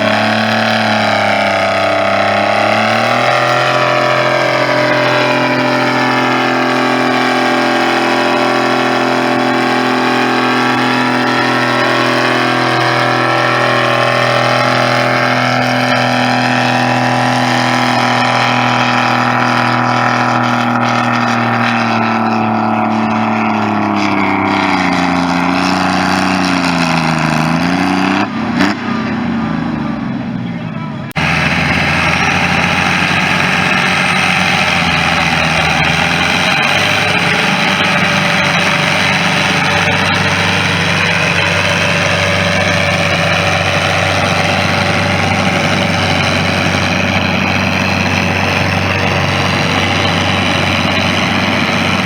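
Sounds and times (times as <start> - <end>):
tractor engine running hard: 0.0 - 52.0.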